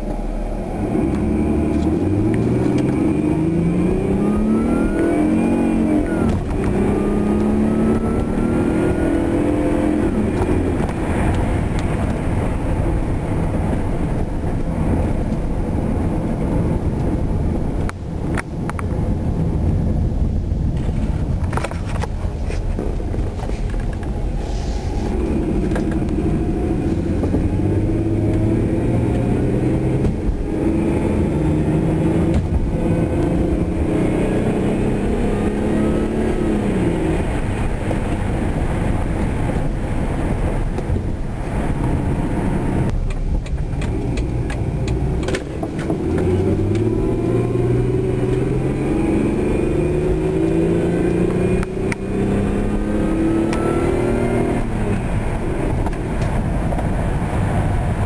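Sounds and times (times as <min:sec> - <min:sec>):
thin rising whine: 0:00.0 - 0:10.8
car engine accelerating: 0:00.0 - 0:58.0.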